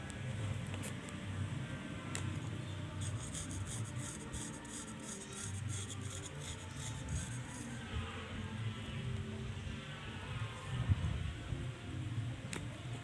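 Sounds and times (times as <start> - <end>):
comb scratching through hair: 3.0 - 7.8.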